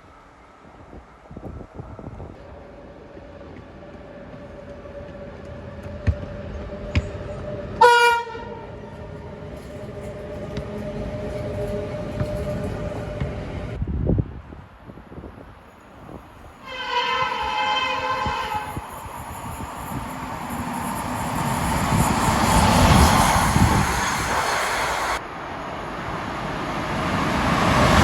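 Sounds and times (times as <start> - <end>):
train passing: 0.0 - 28.0
train horn: 7.3 - 10.7, 16.6 - 19.0.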